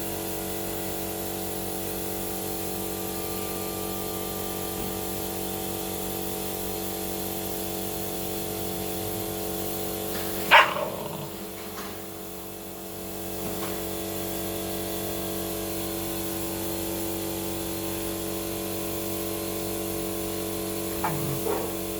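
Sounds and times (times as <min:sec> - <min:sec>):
dog barking: 0:10.5 - 0:11.4, 0:21.0 - 0:21.9.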